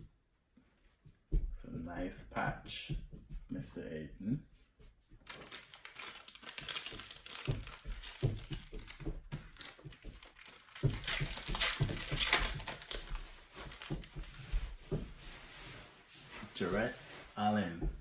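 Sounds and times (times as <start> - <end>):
plastic wrapper crinkling: 5.2 - 14.4.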